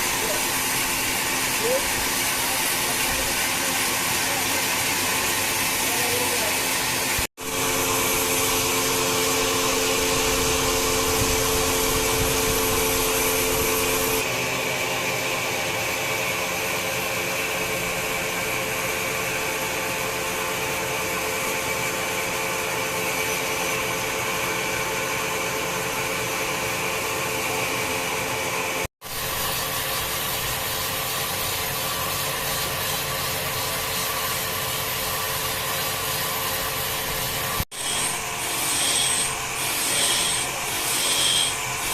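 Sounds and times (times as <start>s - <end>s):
wood-cutting machine whine: 0.0s - 41.9s
steady hum: 7.2s - 14.3s.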